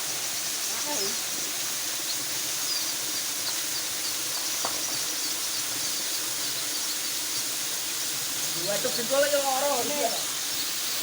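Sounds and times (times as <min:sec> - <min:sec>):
rushing water: 0:00.0 - 0:11.0
small bird chirping: 0:00.0 - 0:11.0.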